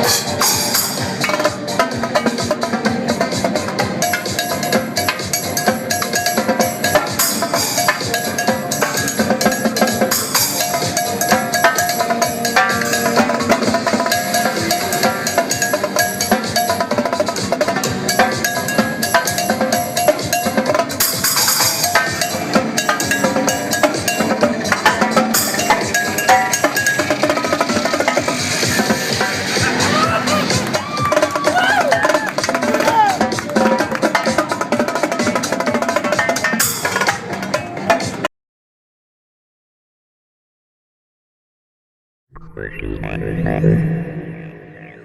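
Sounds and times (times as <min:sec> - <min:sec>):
electronic dance music: 0:42.4 - 0:45.0.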